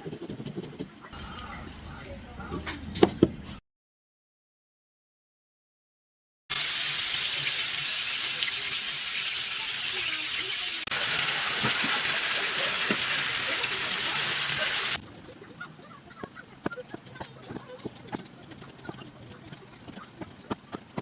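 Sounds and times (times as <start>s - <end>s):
food sizzling in a pan: 6.5s - 15.0s.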